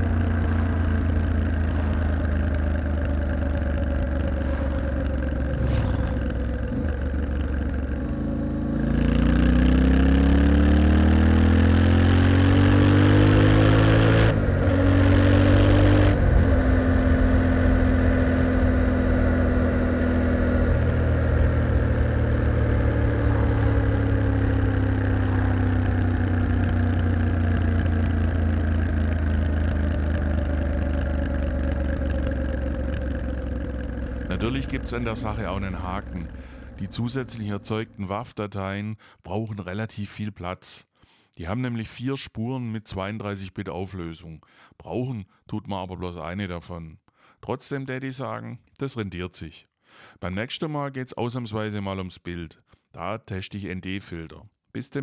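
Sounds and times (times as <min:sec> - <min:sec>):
vehicle engine revving: 0:00.0 - 0:38.0.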